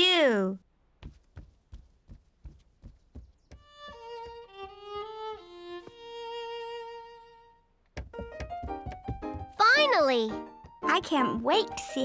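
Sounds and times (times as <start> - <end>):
violin melody: 3.6 - 9.5
soft taps: 7.8 - 9.6.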